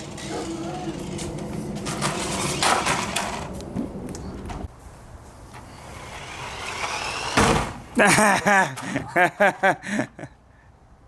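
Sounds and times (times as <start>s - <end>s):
small electric motor whirring: 5.7s - 7.5s.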